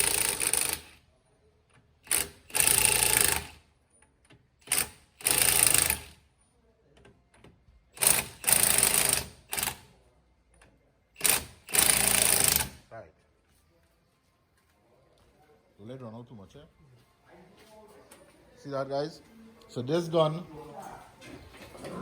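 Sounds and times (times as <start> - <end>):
impact wrench hammering: 11.2 - 12.8.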